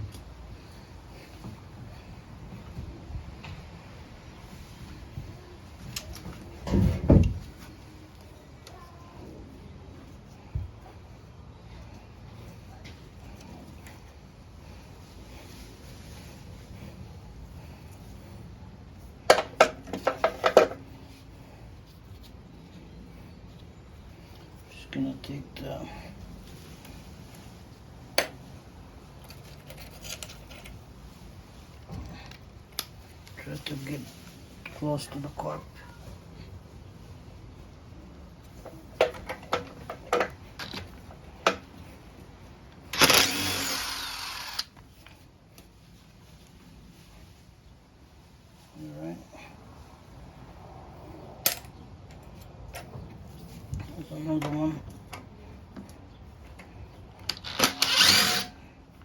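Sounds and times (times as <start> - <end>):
power tool running: 42.9 - 44.7, 57.5 - 58.5.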